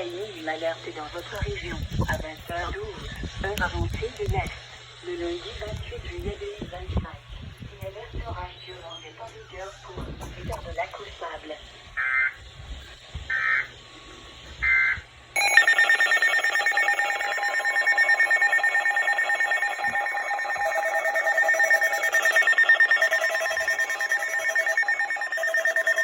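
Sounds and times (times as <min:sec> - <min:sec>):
short data bursts: 0:11.8 - 0:26.0
two-pitch electronic alarm tone: 0:14.5 - 0:26.0.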